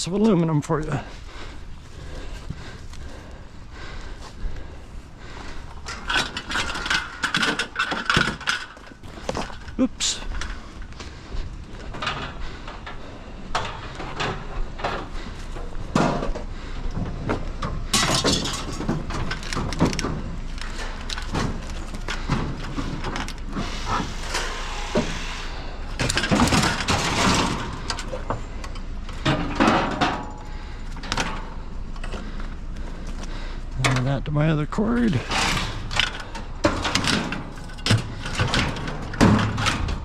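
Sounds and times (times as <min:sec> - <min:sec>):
scrap metal clanking: 0:05.8 - 0:10.7, 0:11.8 - 0:32.4, 0:33.8 - 0:40.0
scrap metal clattering scrapes: 0:11.8 - 0:31.6, 0:35.0 - 0:40.0.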